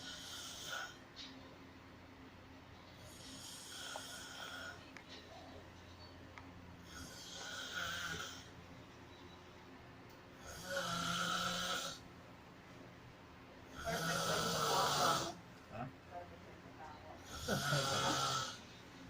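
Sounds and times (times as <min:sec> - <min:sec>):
person snoring: 0:03.1 - 0:04.8, 0:06.9 - 0:08.5, 0:10.4 - 0:12.0, 0:13.8 - 0:15.4, 0:17.2 - 0:18.6.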